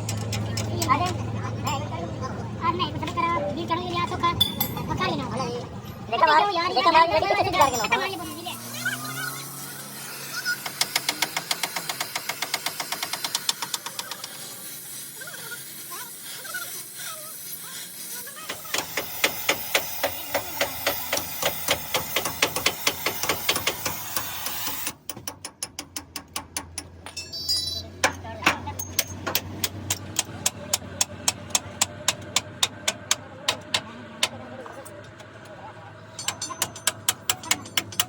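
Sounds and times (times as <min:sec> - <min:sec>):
rapid hammer blows on metal: 0:07.4 - 0:27.0, 0:27.9 - 0:34.4, 0:36.2 - 0:38.0.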